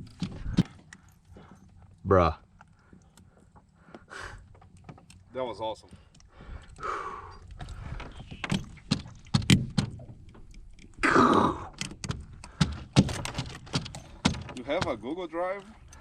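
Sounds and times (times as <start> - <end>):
knocks and thumps: 0.0 - 0.7, 7.8 - 10.4, 11.7 - 15.0.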